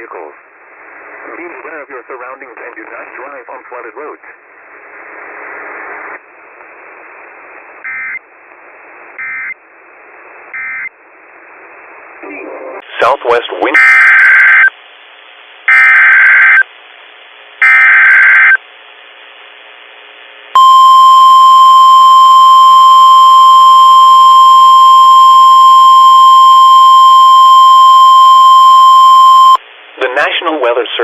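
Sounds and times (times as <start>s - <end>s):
loud steady alarm tone: 13.8s - 14.7s, 15.7s - 16.6s, 17.6s - 18.6s, 20.6s - 29.6s.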